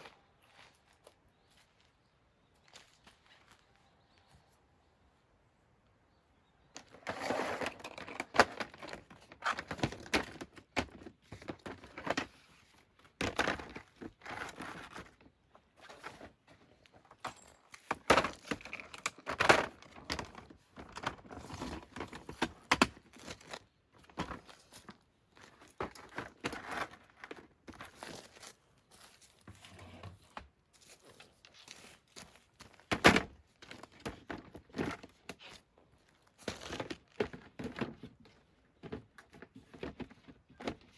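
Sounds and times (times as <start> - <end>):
clinks and knocks: 17.1 - 20.3.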